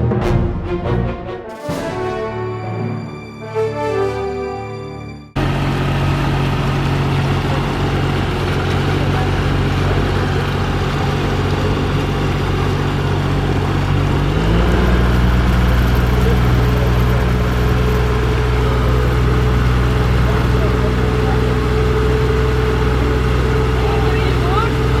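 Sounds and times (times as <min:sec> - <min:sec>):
motorboat engine running: 0:05.4 - 0:25.0.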